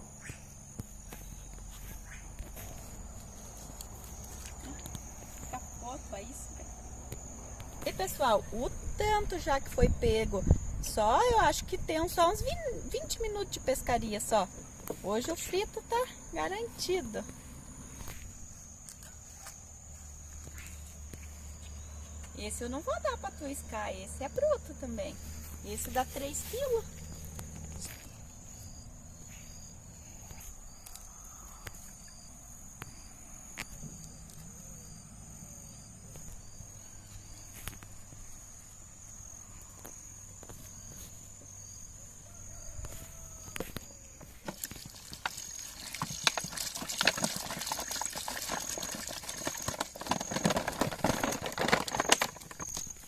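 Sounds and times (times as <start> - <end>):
short insect chirp: 0.0 - 50.4
handling clicks and knocks: 44.2 - 53.0.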